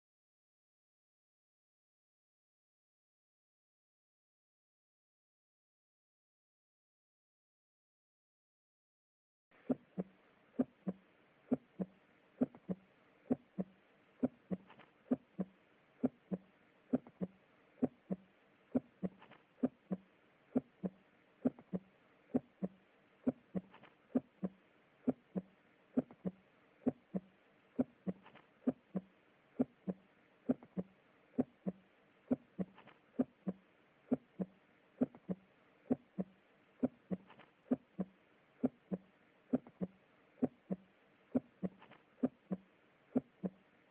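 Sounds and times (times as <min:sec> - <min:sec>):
heartbeat: 0:09.6 - 0:40.8, 0:41.4 - 0:43.6.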